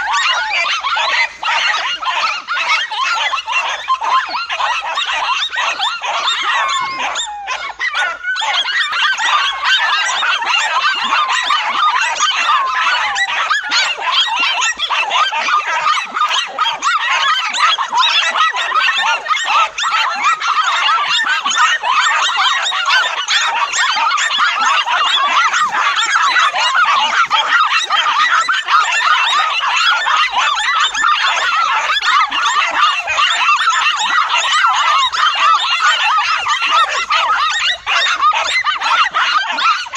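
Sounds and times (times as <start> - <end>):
chorus of animal calls: 0.0 - 39.9.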